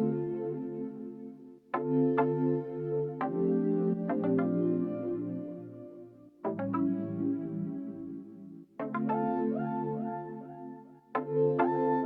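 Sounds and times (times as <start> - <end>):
soft ambient synthesizer chords: 0.0 - 12.0.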